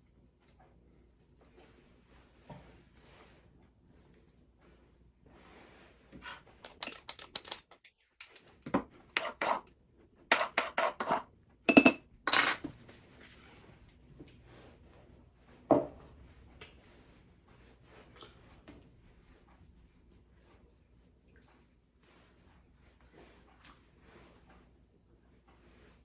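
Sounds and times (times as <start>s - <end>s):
utensils and dishes clattering: 6.7s - 8.7s.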